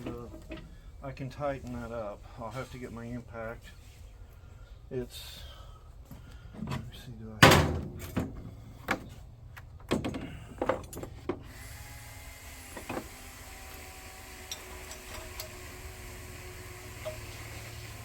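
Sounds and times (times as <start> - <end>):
tools knocking and clunking: 0.0 - 0.7, 6.6 - 9.1, 9.8 - 11.4.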